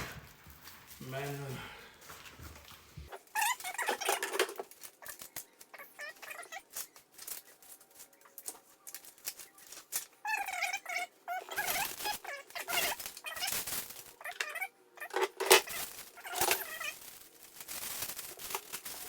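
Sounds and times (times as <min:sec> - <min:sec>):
parts clicking and rattling: 0:03.2 - 0:05.5, 0:11.4 - 0:19.0.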